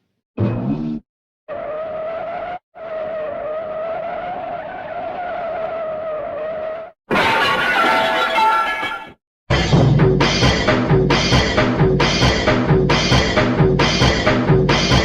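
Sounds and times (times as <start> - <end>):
cartoon tyre screech: 0.4 - 9.0.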